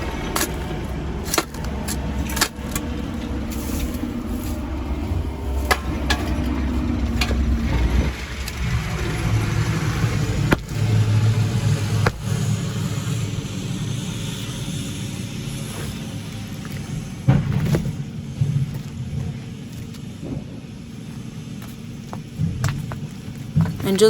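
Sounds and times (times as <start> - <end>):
heavy machine engine running: 0.0 - 24.0
concrete clanking and knocking: 5.6 - 11.0.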